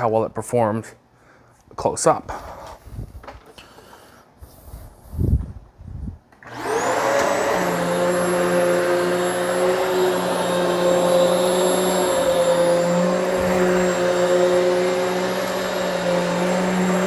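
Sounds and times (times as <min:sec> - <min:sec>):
vacuum cleaner motor whine: 0:06.4 - 0:17.0.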